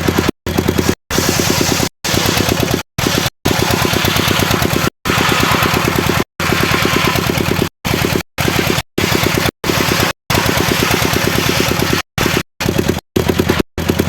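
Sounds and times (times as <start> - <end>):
sawmill engine pulsing: 0.0 - 14.0
saw blade hiss: 0.8 - 7.6, 9.2 - 12.4.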